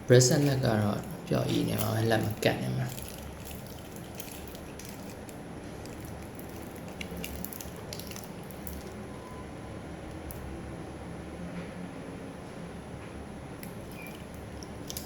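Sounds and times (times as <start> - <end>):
steady background hum: 0.0 - 15.0
metal watch bracelet clicking: 0.3 - 9.0, 13.6 - 15.0.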